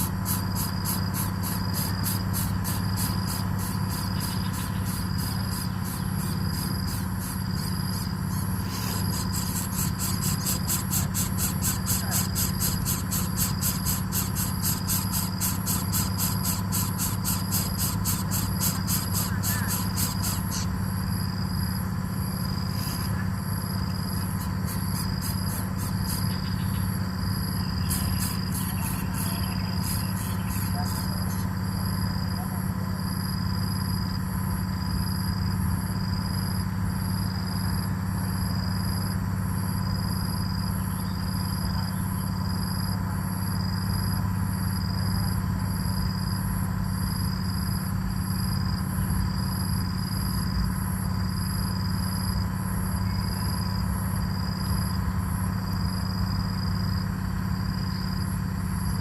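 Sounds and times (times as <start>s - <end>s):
insects chirping: 0.0s - 59.0s
steady low hum: 0.0s - 59.0s.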